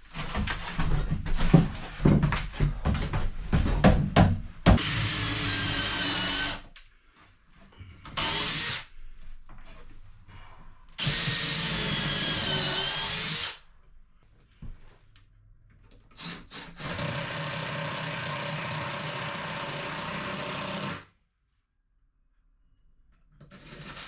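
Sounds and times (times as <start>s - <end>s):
power drill whining: 4.8s - 6.6s, 8.1s - 8.9s, 11.0s - 13.6s, 16.2s - 21.1s.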